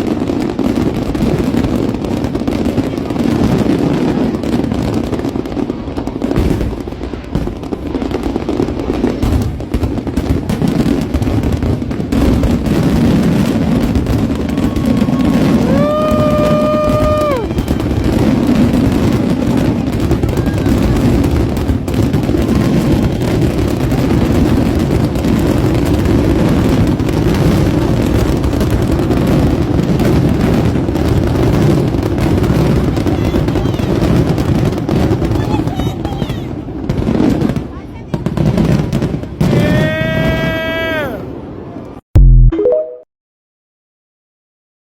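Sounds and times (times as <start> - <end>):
firework bursts and crackles: 0.0 - 42.0
high rising tone: 42.2 - 43.1.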